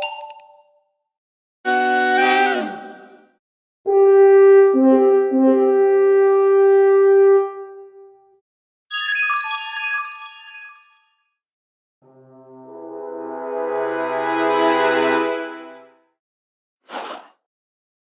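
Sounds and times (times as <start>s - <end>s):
held chord-like ringtone: 8.9s - 11.2s.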